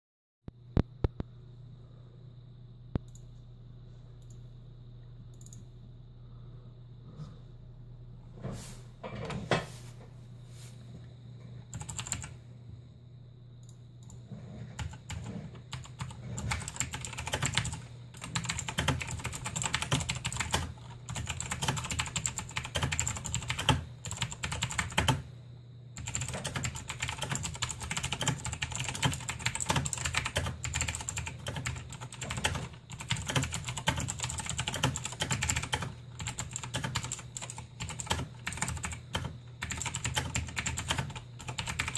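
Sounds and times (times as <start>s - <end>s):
typing on clicky mechanical keyboard: 11.7s - 12.4s, 14.0s - 25.2s, 26.0s - 41.9s.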